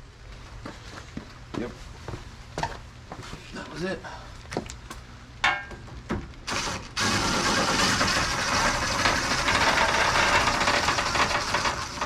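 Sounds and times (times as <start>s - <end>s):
mechanical whirring rattle: 6.5s - 12.0s.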